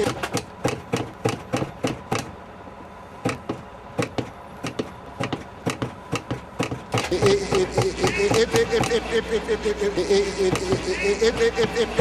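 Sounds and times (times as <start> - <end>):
edited audio stutter: 7.0 - 12.0.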